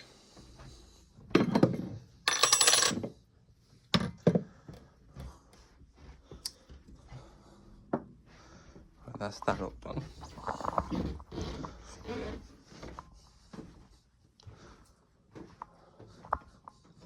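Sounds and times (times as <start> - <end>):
objects clattering on a shelf: 1.3 - 3.2.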